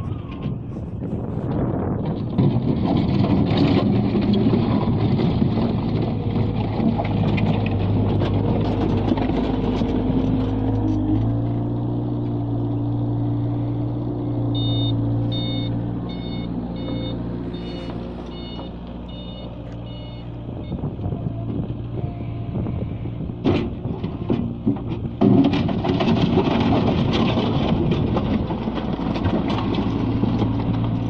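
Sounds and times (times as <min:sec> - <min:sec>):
rattling and clatter: 0:00.0 - 0:12.4, 0:23.3 - 0:31.0
loader diesel engine working: 0:00.0 - 0:31.0
reversing alarm beeping: 0:14.2 - 0:20.9.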